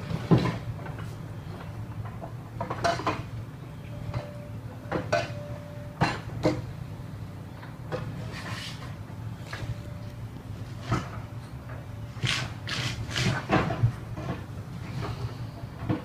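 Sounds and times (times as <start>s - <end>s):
low machine hum: 0.0s - 16.0s
metal clanks and knocks: 1.9s - 3.3s.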